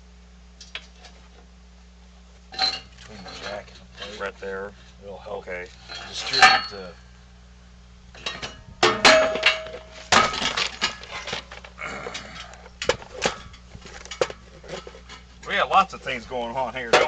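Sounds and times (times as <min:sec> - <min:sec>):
ringing metal tone: 0:02.5 - 0:04.2, 0:05.7 - 0:07.1, 0:08.1 - 0:11.3
metal parts and tools clanking: 0:02.5 - 0:04.3, 0:05.7 - 0:07.0, 0:08.1 - 0:15.6.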